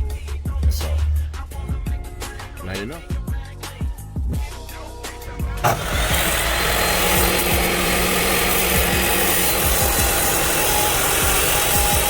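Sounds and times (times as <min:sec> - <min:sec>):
power tool grinding metal: 0:05.4 - 0:12.0.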